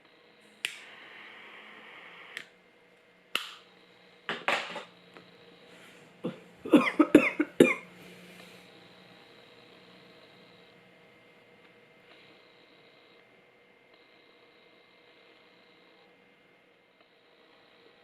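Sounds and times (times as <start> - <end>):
cigarette hiss: 0.5 - 2.5
lighter clicks: 3.3 - 3.6
woman coughing: 6.2 - 7.9.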